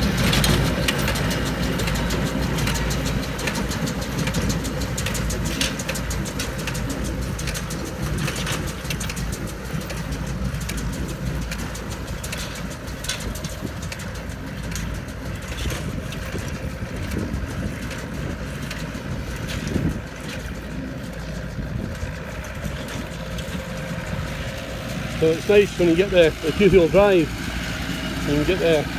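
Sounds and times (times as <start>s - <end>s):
tractor diesel engine running: 0.0s - 28.9s.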